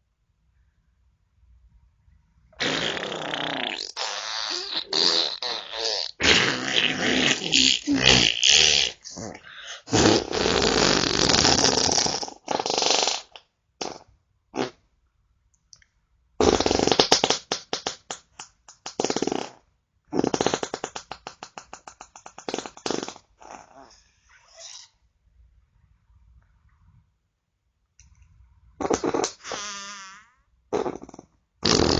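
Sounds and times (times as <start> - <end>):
farts: 2.6 - 14.8, 16.4 - 24.9, 28.8 - 31.9.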